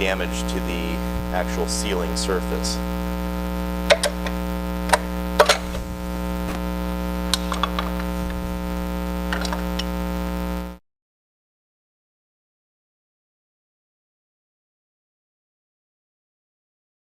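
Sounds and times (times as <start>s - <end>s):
mains hum: 0.0s - 10.8s.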